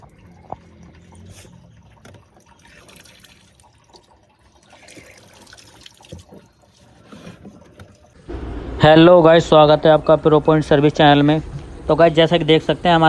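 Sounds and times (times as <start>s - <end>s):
water trickling and dripping: 0.0s - 8.3s.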